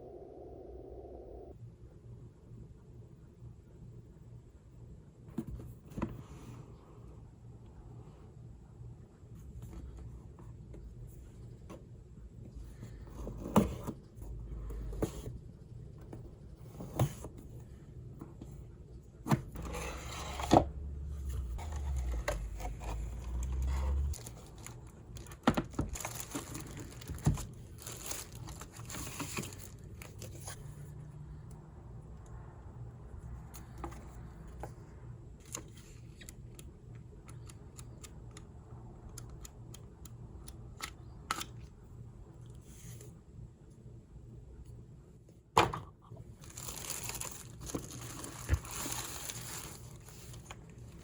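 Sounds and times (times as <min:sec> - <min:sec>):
wrapping crinkling and tearing: 0:21.9 - 0:30.4, 0:46.4 - 0:50.6.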